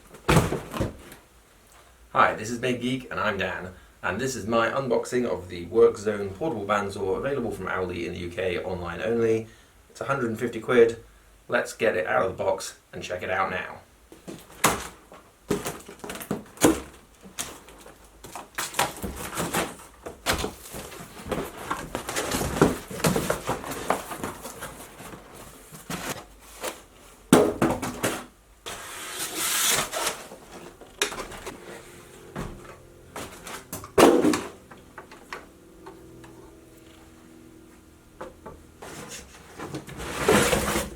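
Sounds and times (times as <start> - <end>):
knocks and thuds of parts: 0.0 - 1.2, 14.1 - 28.4, 29.8 - 31.6, 32.2 - 36.4
packaging rustling: 14.2 - 31.6.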